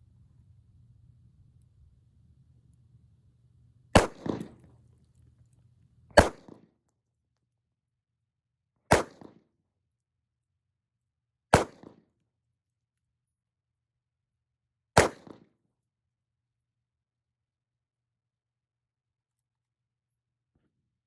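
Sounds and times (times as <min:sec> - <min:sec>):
revolver gunshots with echo: 0:04.0 - 0:04.7, 0:06.2 - 0:06.6, 0:08.9 - 0:09.3, 0:11.6 - 0:12.0, 0:15.0 - 0:15.4.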